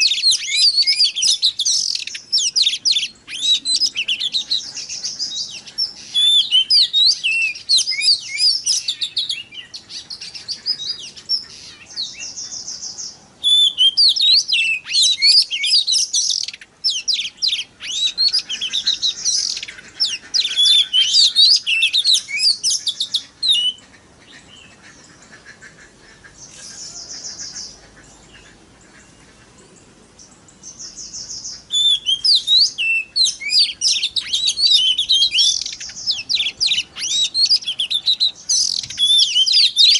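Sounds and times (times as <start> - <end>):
bird singing whistled notes: 0.0 - 23.8, 29.8 - 39.9
buzzy bird trills: 30.3 - 39.9.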